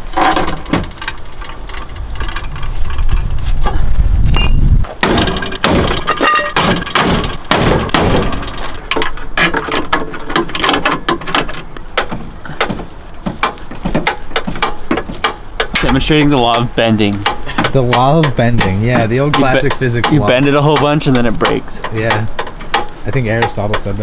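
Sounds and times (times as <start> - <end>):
wind buffeting microphone: 1.4 - 5.3.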